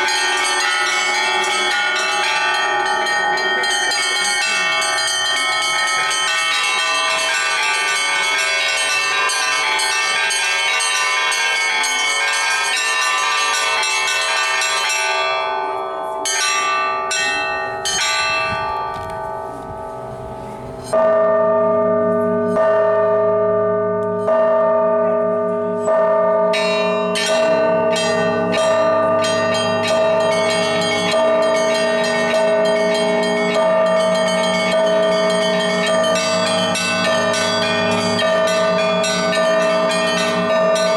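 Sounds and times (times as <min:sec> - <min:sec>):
small high church bells pealing: 0:00.0 - 0:40.9
deep heavy bell striking: 0:17.0 - 0:40.9.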